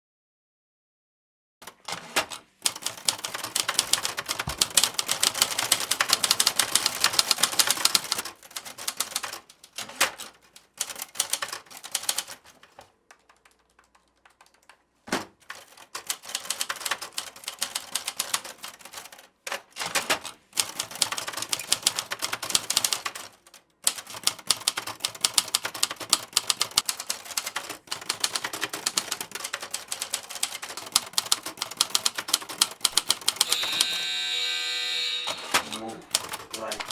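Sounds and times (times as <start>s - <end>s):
typewriter key strikes: 2.7s - 8.2s, 30.8s - 33.9s, 35.3s - 36.9s.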